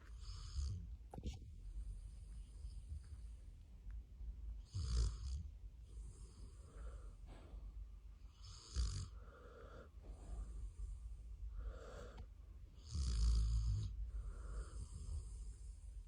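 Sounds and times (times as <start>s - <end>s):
dog snoring: 0.0s - 0.9s, 4.6s - 7.2s, 8.3s - 11.0s, 11.6s - 15.8s.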